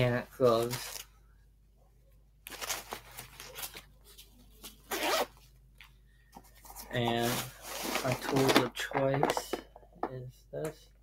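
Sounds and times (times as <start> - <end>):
rustling and handling of bag: 2.4 - 8.6.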